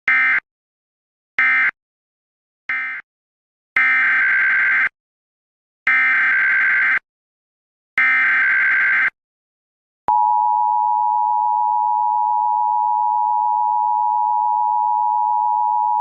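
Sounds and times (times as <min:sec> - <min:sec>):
two-tone alarm signal: 0:10.1 - 0:16.0.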